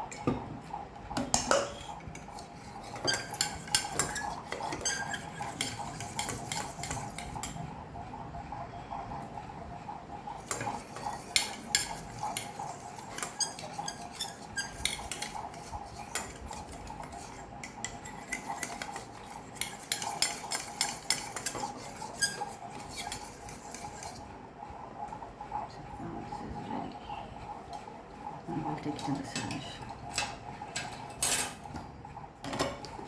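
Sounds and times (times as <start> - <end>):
fork scraping against a bowl: 1.5 - 7.6, 10.4 - 24.3.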